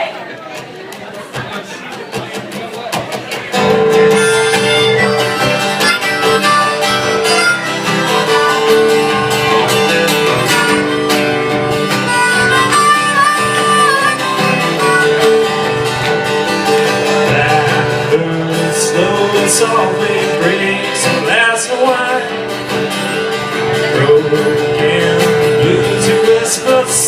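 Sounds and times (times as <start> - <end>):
strummed guitar: 0.6 - 27.0
bending lead guitar melody: 3.2 - 27.0.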